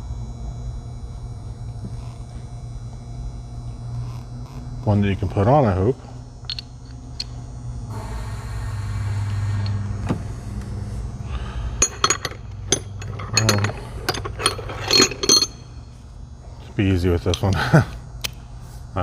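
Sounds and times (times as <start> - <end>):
steady low hum: 0.0 - 19.0
metal tools clinking: 11.8 - 15.8.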